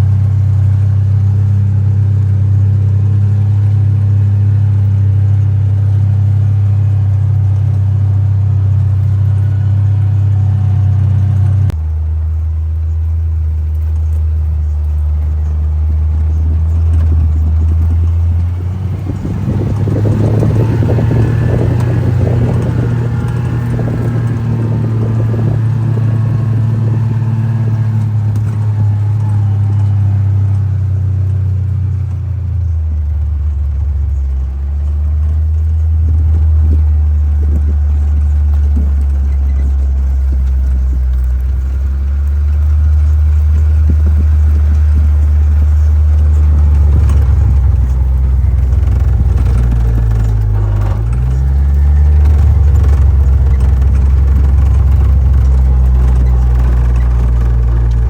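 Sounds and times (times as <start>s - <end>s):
utility vehicle engine running: 0.0s - 58.0s
vehicle rattling over rough ground: 0.0s - 58.0s.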